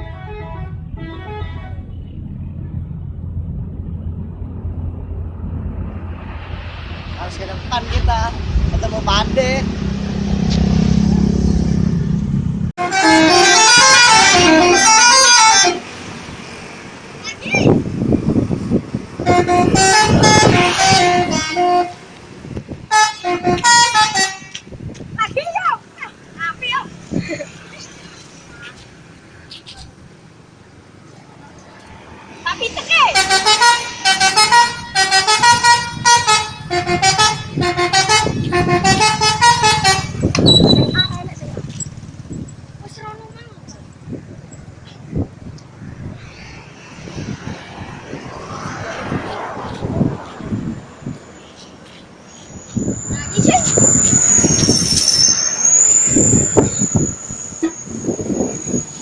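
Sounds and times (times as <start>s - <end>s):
multi-tone bus horn melody: 0.0s - 2.0s, 12.8s - 16.0s, 19.2s - 24.6s, 33.0s - 41.0s
bus engine rumbling: 0.0s - 59.0s.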